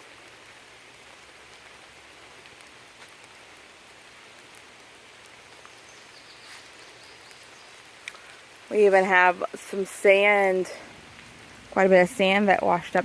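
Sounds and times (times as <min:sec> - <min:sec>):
faint water hiss: 0:00.0 - 0:13.0
light ticks: 0:02.4 - 0:03.4, 0:04.3 - 0:05.8, 0:06.8 - 0:08.4.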